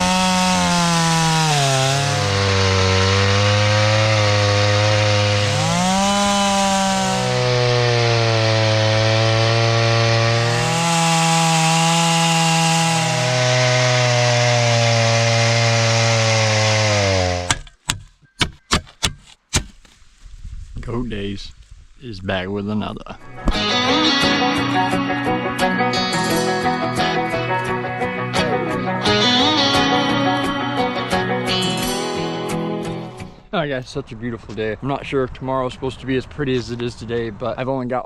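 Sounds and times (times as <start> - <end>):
chainsaw cutting wood: 0.0 - 19.8, 23.4 - 33.4
sharp knocks: 17.4 - 19.8.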